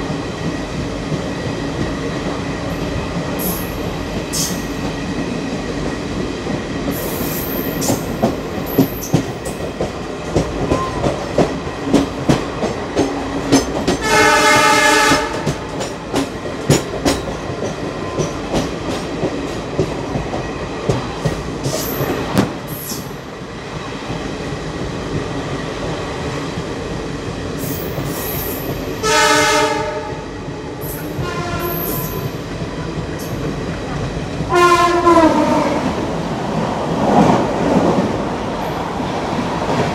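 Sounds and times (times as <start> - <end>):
train rail noise: 0.0 - 39.9
diesel horn blasts: 14.0 - 15.5, 29.0 - 30.2, 31.2 - 31.9, 34.5 - 35.8
wheels clicking over rail joints: 15.2 - 23.1.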